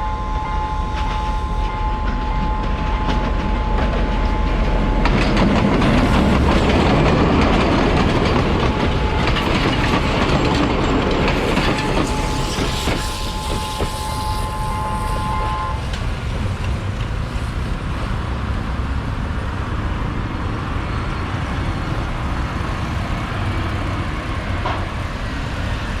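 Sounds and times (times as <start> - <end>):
train wheels clattering on rails: 0.8 - 18.2.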